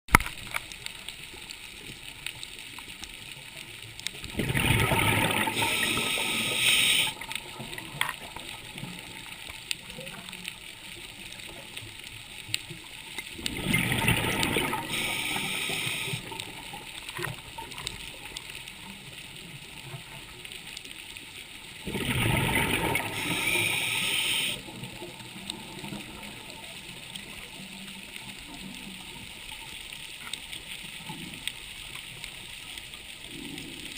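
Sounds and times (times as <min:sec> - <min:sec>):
faint crackling: 0:00.1 - 0:33.9
exhaled bubbles underwater: 0:04.2 - 0:10.4, 0:13.3 - 0:18.4, 0:21.8 - 0:27.5.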